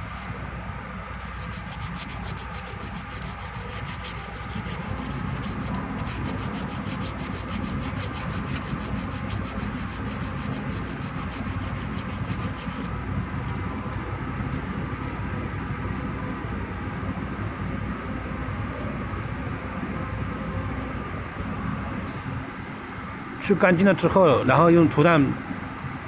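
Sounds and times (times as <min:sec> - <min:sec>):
hand scraper scraping metal: 0:01.2 - 0:12.9.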